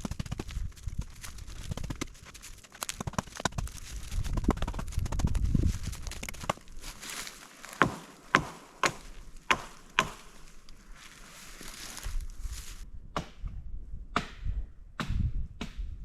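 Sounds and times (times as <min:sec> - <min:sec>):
axe chopping wood: 0:07.6 - 0:10.5, 0:13.2 - 0:13.5, 0:14.2 - 0:16.0.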